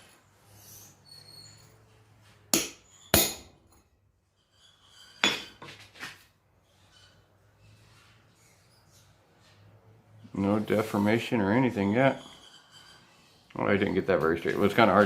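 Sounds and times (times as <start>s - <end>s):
hammer striking steel punch: 2.5s - 3.6s.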